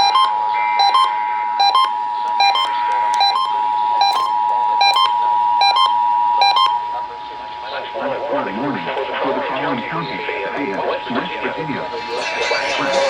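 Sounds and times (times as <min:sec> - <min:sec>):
electronic alert beeps: 0:00.0 - 0:06.8.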